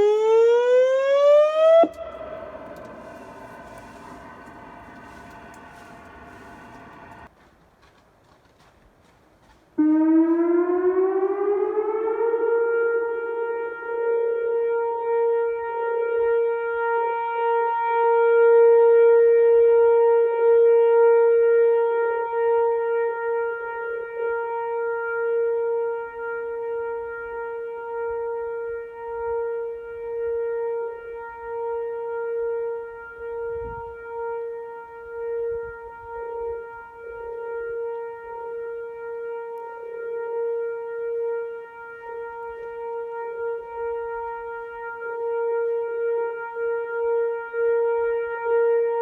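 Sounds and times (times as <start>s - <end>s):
outdoor warning siren winding up: 0.0s - 7.3s, 9.8s - 14.3s.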